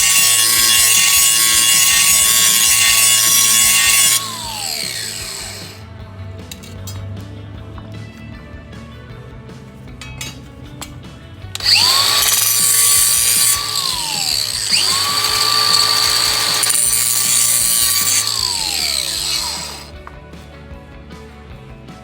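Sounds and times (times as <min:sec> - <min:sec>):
power drill whirring: 0:00.0 - 0:05.8, 0:11.6 - 0:19.9.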